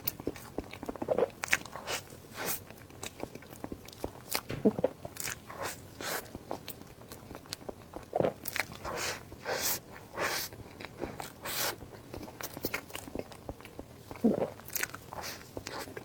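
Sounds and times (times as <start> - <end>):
crunchy chewing: 7.4 - 16.0.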